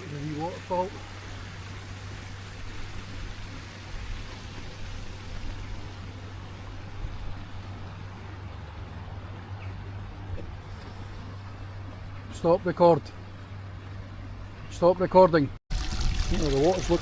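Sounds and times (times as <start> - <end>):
small waterfall splashing: 0.0 - 7.0, 15.7 - 17.0.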